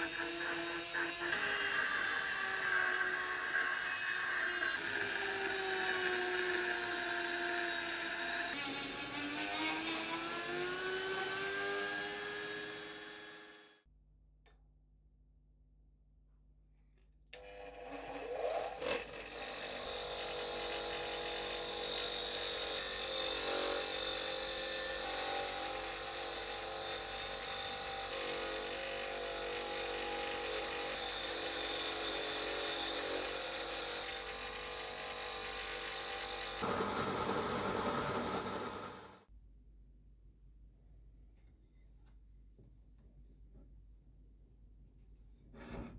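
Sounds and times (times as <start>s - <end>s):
electric power tool running: 0.0s - 13.7s, 28.6s - 39.2s.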